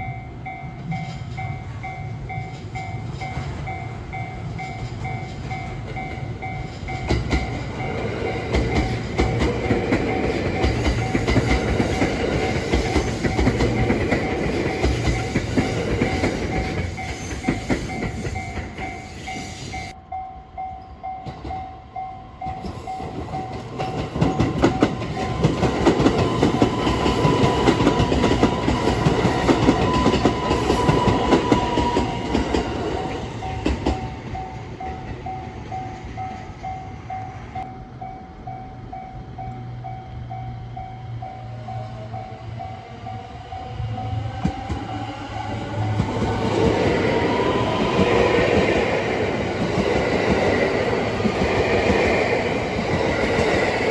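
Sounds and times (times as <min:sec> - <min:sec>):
crossing warning bell ringing: 0:00.0 - 0:53.9
train wheels clattering: 0:04.4 - 0:20.0, 0:22.5 - 0:36.6, 0:44.2 - 0:53.9.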